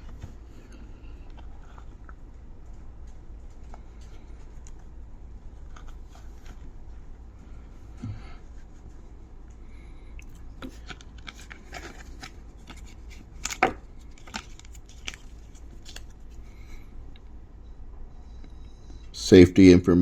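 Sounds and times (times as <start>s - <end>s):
cardboard packaging being handled: 10.6s - 16.4s.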